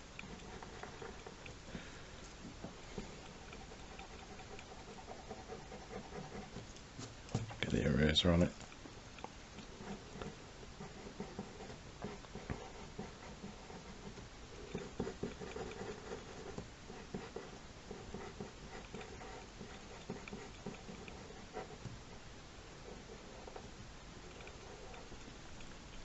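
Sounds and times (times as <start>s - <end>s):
pencil scratching on paper: 0.2s - 1.4s, 3.2s - 6.7s, 9.7s - 22.2s, 22.8s - 23.7s
eraser rubbing on paper: 3.6s - 6.6s.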